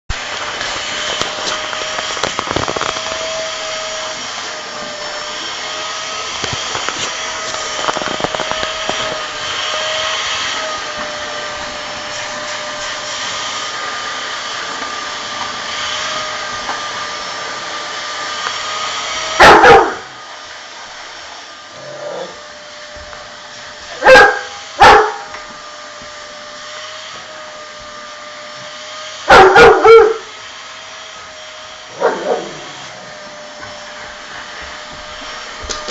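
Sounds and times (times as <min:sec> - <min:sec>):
vacuum cleaner whining: 0:00.1 - 0:35.9
dog barking: 0:19.4 - 0:20.1, 0:23.9 - 0:25.3, 0:29.3 - 0:30.3, 0:31.9 - 0:32.6.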